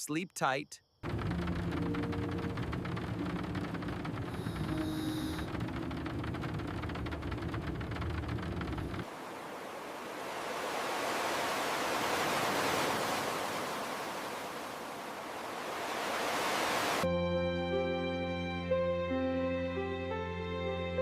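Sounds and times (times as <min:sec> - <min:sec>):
low steady rumble: 0:01.0 - 0:10.6
ocean surf waves: 0:09.0 - 0:17.1.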